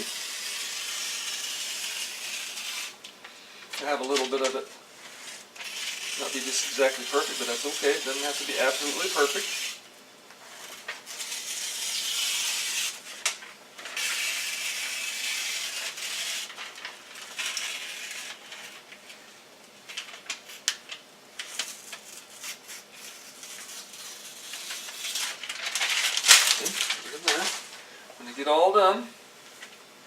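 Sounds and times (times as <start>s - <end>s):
foil tape ripping: 0.0s - 3.1s, 3.8s - 9.8s, 10.4s - 19.1s, 19.9s - 27.7s
foil crinkling: 3.7s - 9.5s, 10.5s - 19.2s, 19.8s - 27.8s.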